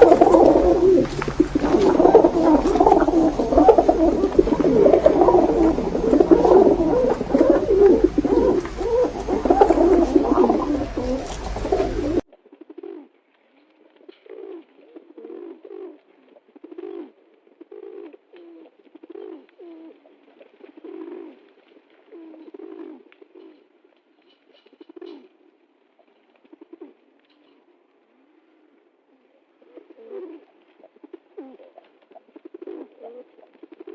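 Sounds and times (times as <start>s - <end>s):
low hum: 0.0s - 12.2s
pigeons cooing: 0.0s - 13.1s, 14.0s - 23.7s, 24.3s - 25.4s, 26.0s - 33.9s.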